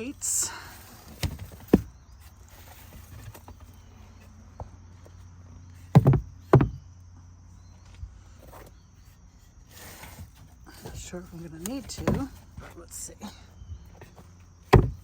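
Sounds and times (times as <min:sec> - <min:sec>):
loud hollow crate knocks: 0:05.8 - 0:06.9, 0:14.6 - 0:15.0.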